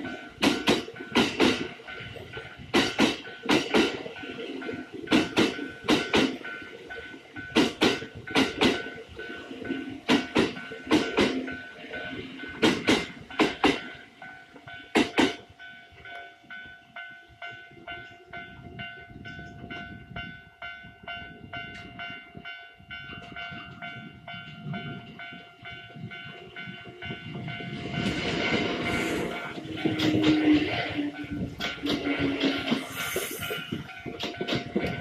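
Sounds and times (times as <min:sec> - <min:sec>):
train wheels clacking over rail joints: 0:00.0 - 0:15.5, 0:26.0 - 0:35.0
level-crossing alarm ringing: 0:00.0 - 0:35.0.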